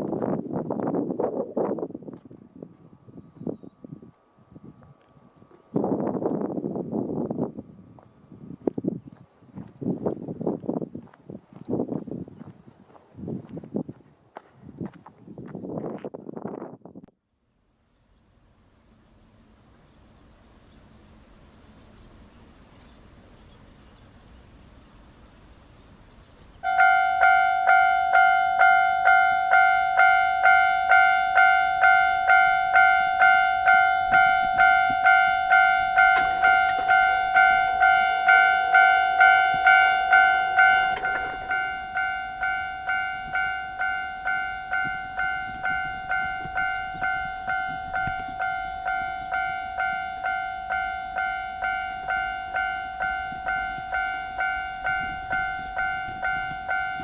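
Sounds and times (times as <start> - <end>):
level-crossing two-tone alarm: 26.6 - 57.0.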